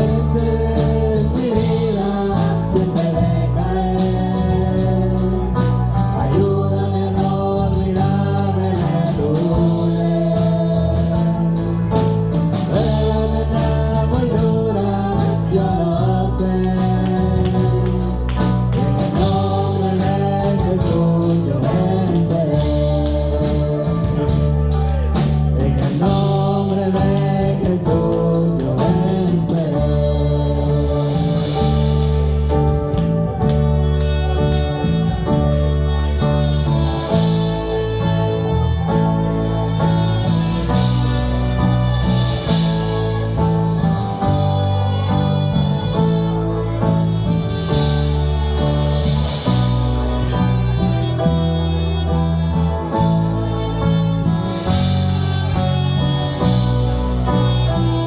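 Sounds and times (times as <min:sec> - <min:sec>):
gospel worship music: 0:00.0 - 0:58.0.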